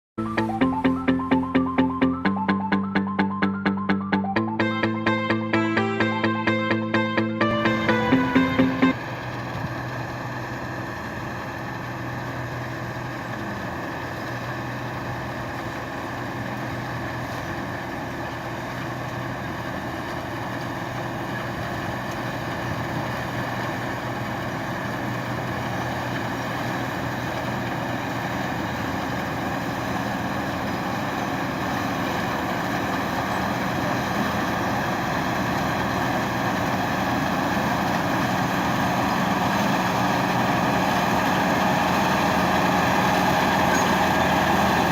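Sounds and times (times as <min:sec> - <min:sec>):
combine harvester drone: 0:00.2 - 0:44.9.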